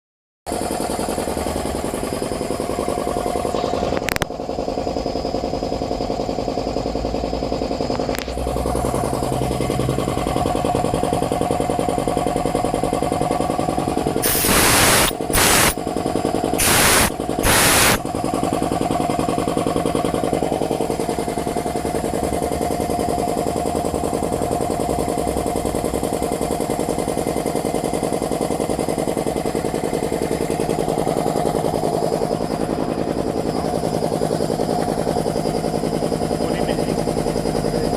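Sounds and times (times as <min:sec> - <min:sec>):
air compressor knocking: 0:00.5 - 0:37.9
bursts of hissing air: 0:14.2 - 0:15.8, 0:16.6 - 0:18.0.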